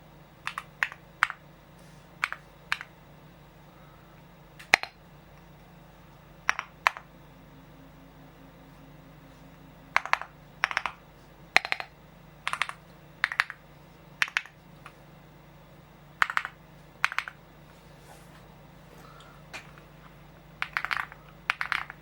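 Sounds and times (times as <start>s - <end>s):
mechanical keyboard typing: 0.4s - 1.4s, 2.2s - 2.9s, 10.0s - 13.6s, 14.2s - 14.6s, 16.2s - 17.4s, 20.6s - 22.0s.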